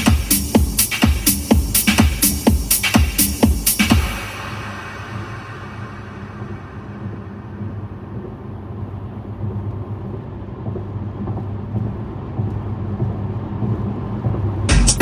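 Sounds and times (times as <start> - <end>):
electronic music with hard beat: 0.0 - 8.4, 13.0 - 15.0.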